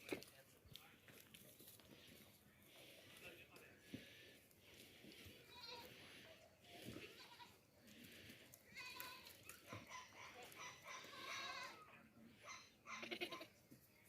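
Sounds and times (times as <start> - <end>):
baby goats bleating: 5.4 - 6.0, 6.8 - 7.6, 8.6 - 9.6, 10.6 - 11.9, 12.9 - 13.5.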